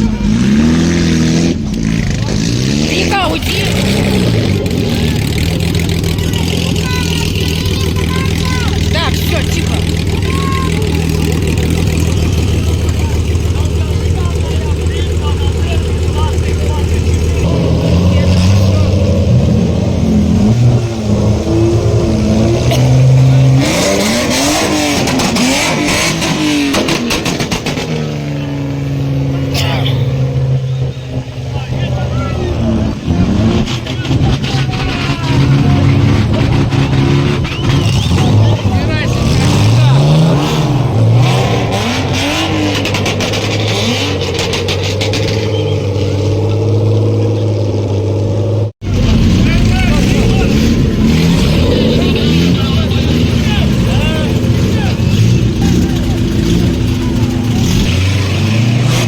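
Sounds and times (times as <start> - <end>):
car engines revving: 0.0 - 59.0
rapid crackling: 1.7 - 29.3, 48.8 - 59.0.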